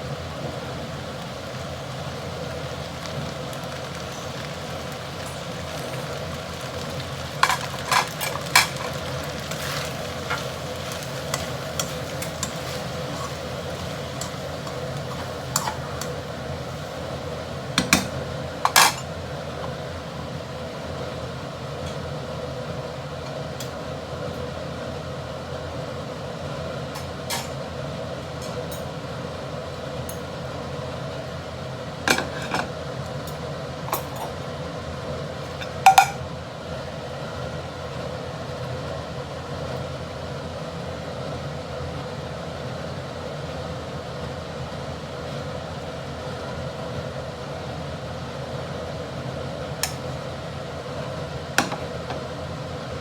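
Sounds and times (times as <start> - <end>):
noodles sizzling in a pan: 0.0 - 53.0
spatula knocking and scraping pan: 7.4 - 17.0, 17.8 - 19.8, 32.1 - 32.7, 51.6 - 52.3.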